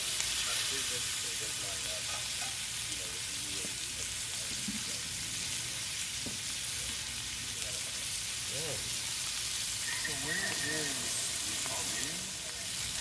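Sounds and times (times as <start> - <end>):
potatoes sizzling in a pan: 0.0 - 13.0.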